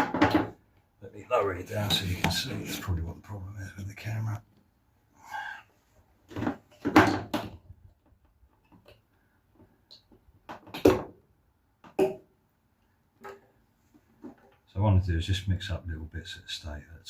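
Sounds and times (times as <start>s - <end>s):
hard objects knocking and clunking: 0.0s - 0.6s, 6.3s - 11.2s.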